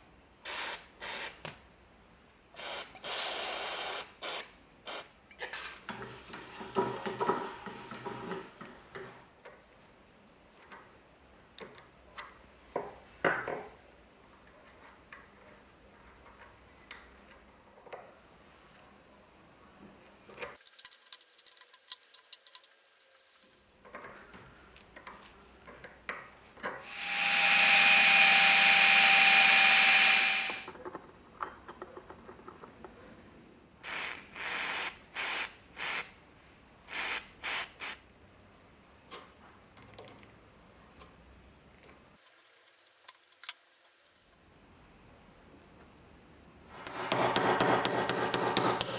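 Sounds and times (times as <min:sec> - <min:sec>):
power tool whining: 0:26.8 - 0:30.7.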